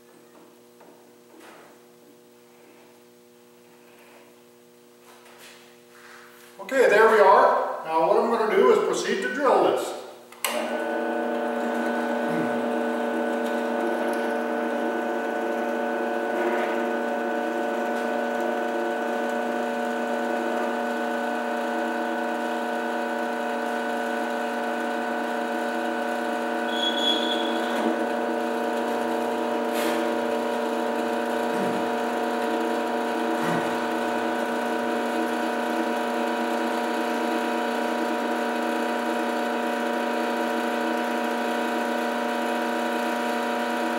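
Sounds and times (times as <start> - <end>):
drill press motor humming: 10.3 - 43.9.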